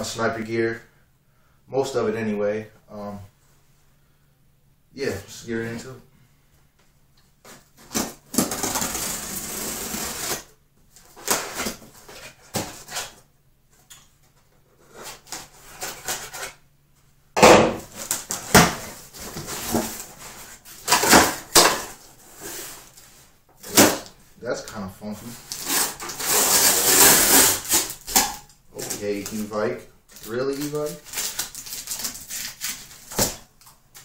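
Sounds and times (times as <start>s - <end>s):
packaging rustling and clattering: 25.4s - 34.0s.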